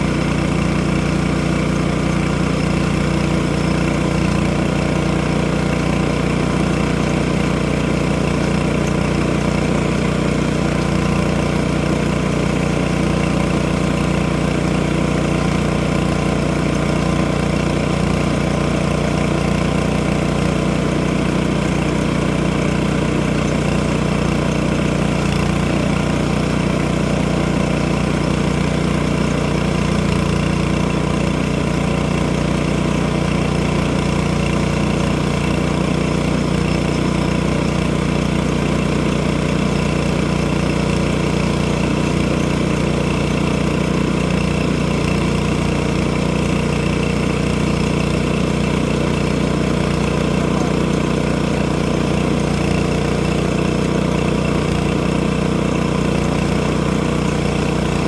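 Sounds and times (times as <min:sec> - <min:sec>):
engine running steadily: 0:00.0 - 0:58.0.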